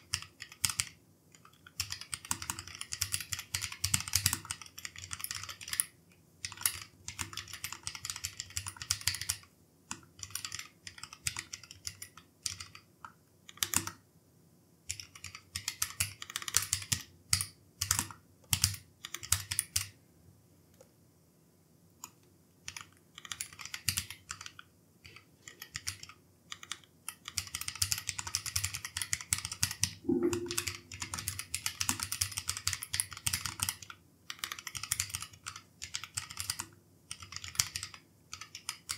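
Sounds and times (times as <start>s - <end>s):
mechanical keyboard typing: 0.0s - 14.0s, 14.9s - 19.9s, 22.0s - 38.9s.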